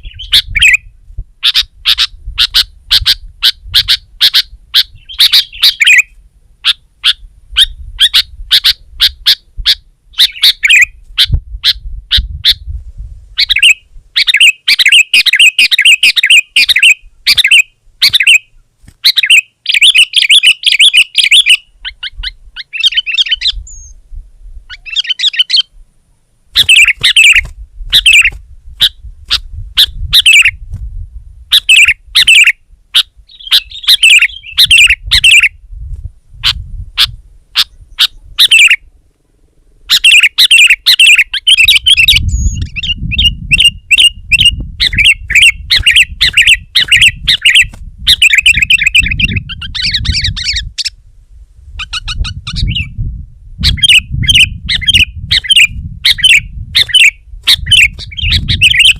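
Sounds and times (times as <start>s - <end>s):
bulbul chirping: 1.4s - 11.4s, 13.4s - 24.0s, 26.6s - 30.5s, 39.9s - 50.9s.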